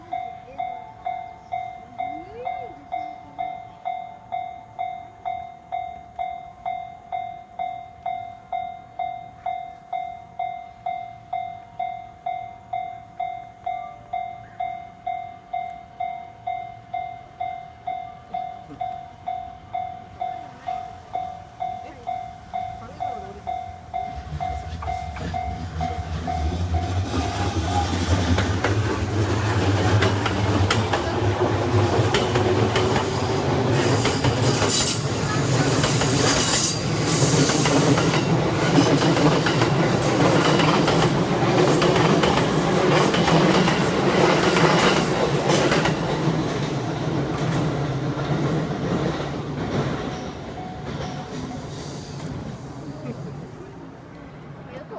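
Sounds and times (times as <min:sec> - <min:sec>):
level crossing bell ringing: 0:00.0 - 0:27.0
train wheels clattering over joints: 0:24.0 - 0:52.7
train wheel squeal: 0:33.0 - 0:39.3, 0:50.1 - 0:53.0.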